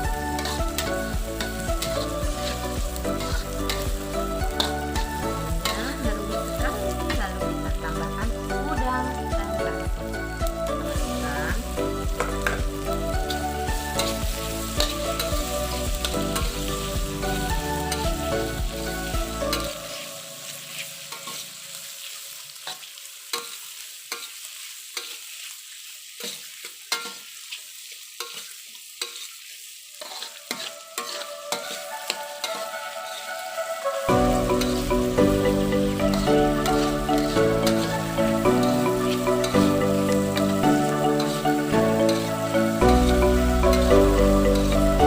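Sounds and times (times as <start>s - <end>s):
background music: 0.0s - 22.0s, 30.6s - 45.0s
food sizzling in a pan: 0.0s - 45.0s
utensil scraping a pan: 30.0s - 31.9s.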